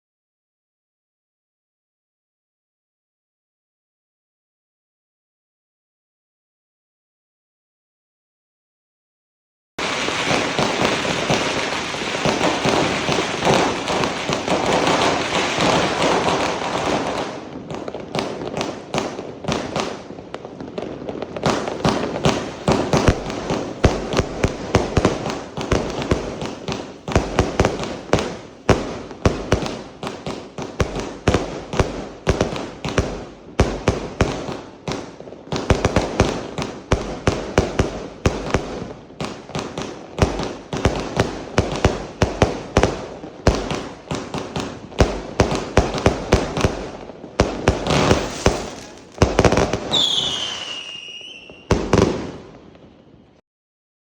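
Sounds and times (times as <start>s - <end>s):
fireworks launches and bangs: 9.8s - 52.9s
fireworks crackling rush: 9.8s - 53.2s.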